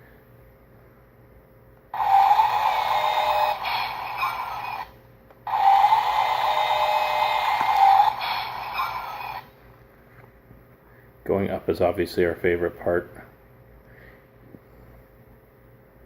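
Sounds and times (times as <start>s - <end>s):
toy bulldozer motor whirring: 2.0s - 4.9s, 5.5s - 9.5s.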